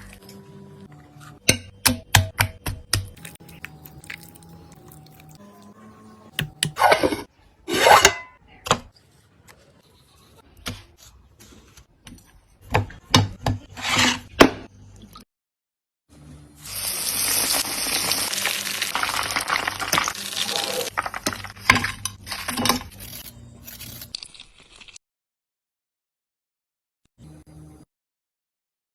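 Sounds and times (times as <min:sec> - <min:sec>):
food sizzling in hot oil: 0:16.6 - 0:21.6.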